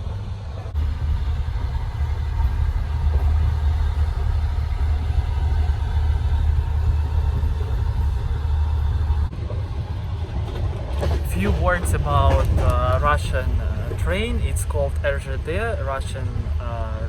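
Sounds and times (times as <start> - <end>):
train low rumble: 0.0 - 17.0.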